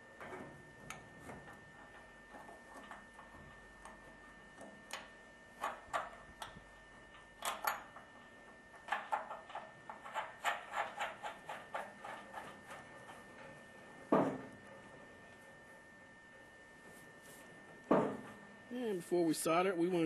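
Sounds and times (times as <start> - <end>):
metallic clicks on copper pipe: 4.6 - 8.1, 8.7 - 12.8.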